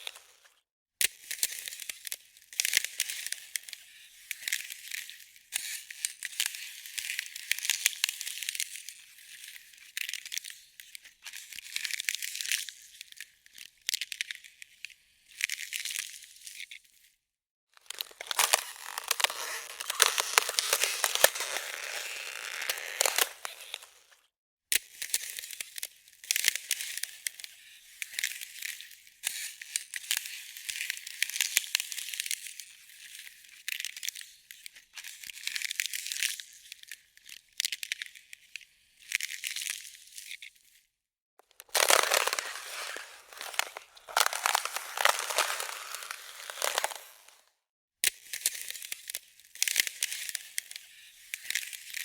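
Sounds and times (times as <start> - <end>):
ice cracking and breaking: 17.8 - 24.1, 41.6 - 47.4.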